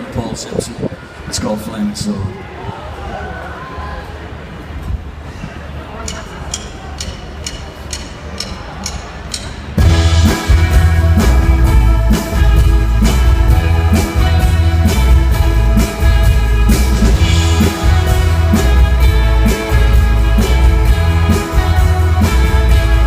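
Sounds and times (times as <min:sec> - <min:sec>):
high count-in clicks: 0:06.1 - 0:09.8
live rock band playing: 0:09.6 - 0:23.0.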